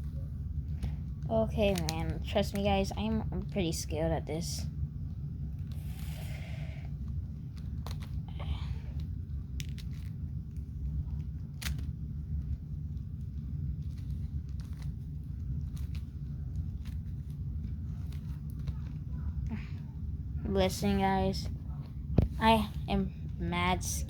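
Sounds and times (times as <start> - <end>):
steady low rumble: 0.0 - 24.0
plastic puzzle cube turning: 1.6 - 2.8, 7.4 - 8.2, 9.0 - 19.2.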